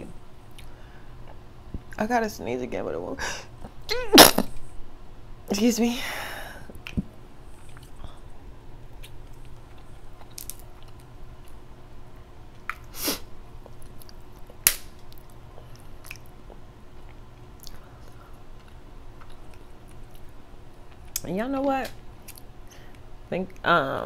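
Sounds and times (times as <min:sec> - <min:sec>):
chewing crab legs: 0:08.9 - 0:11.6, 0:13.6 - 0:21.3.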